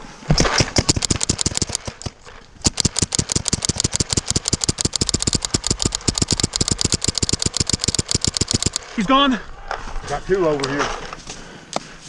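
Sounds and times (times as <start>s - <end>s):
paintball marker rapid firing: 0.3s - 8.8s.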